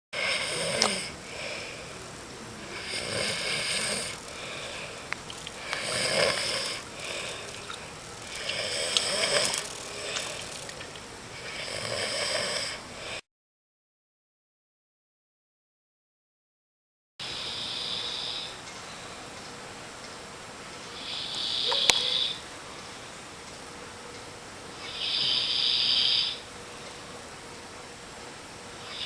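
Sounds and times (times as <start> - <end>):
person snoring: 0.2 - 2.0, 2.6 - 5.0, 5.6 - 7.7, 8.3 - 10.7, 11.4 - 13.2.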